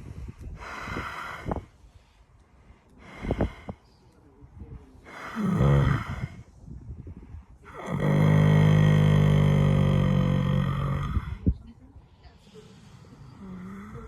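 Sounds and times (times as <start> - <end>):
horse snoring: 5.3 - 6.3, 7.7 - 11.4.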